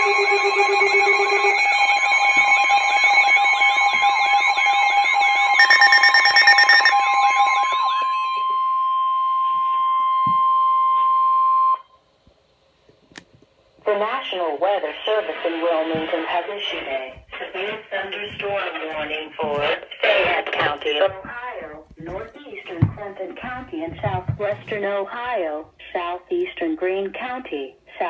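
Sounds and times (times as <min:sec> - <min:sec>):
steady warning alarm tone: 0:05.5 - 0:07.6
steady beeping tones: 0:05.6 - 0:07.0
warbling siren tones: 0:05.6 - 0:07.0.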